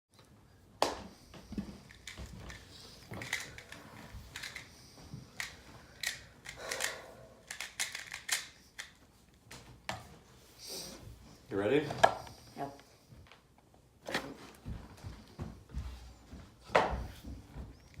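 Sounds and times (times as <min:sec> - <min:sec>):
plastic puzzle cube clicking: 0:05.4 - 0:08.9.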